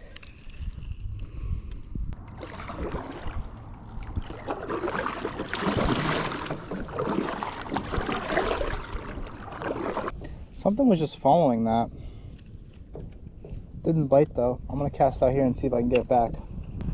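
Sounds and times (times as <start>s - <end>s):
water splashing around a kayak: 2.2s - 10.2s.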